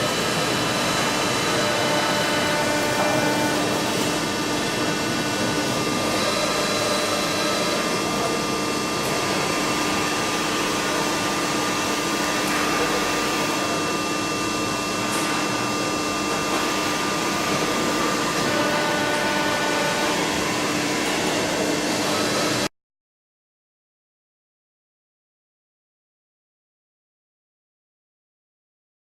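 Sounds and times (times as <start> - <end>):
milling machine whining: 0.0 - 22.7.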